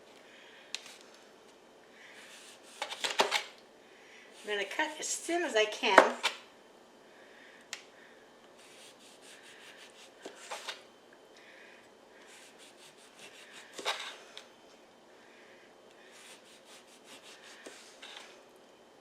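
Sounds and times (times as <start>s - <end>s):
knife sawing through orange: 8.6s - 10.6s, 12.3s - 13.8s, 16.2s - 18.0s.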